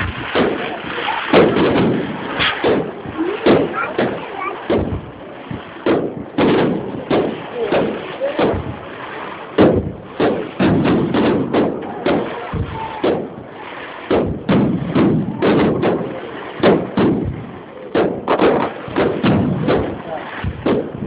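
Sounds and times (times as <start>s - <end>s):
fireworks exploding: 0.0s - 21.0s.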